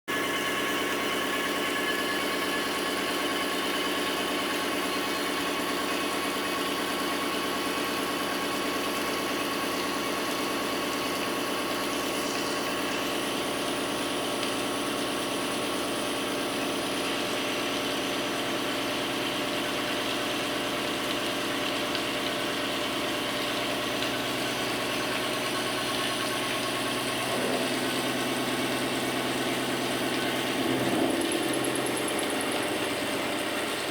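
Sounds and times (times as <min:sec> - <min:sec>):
machining center humming: 0:24.6 - 0:33.9.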